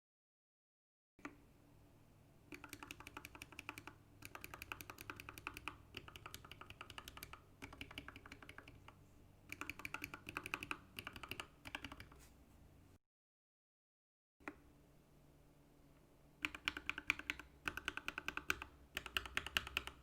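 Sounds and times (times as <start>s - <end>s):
mechanical keyboard typing: 2.5s - 12.2s, 16.4s - 20.0s.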